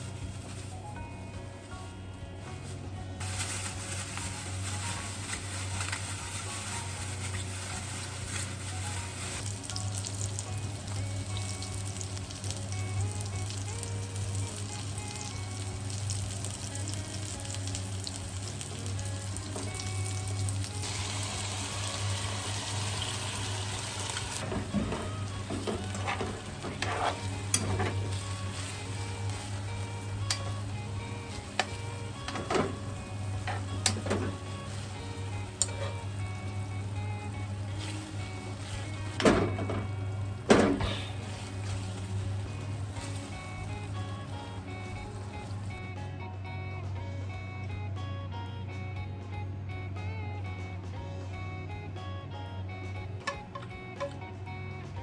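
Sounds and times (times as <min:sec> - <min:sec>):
food sizzling in a frying pan: 0:03.2 - 0:45.8
utensil scraping a pan: 0:22.1 - 0:45.8.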